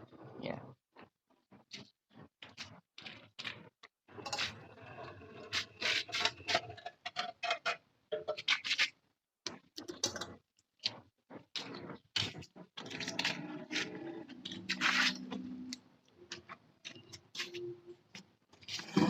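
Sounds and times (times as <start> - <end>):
scrapes rubs and knocks: 4.1 - 7.7, 11.3 - 15.7.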